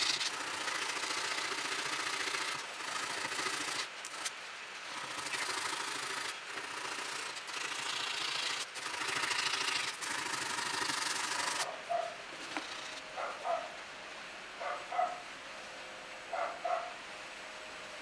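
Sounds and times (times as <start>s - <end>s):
sanding steel knife blade: 0.0s - 4.3s, 5.0s - 11.7s.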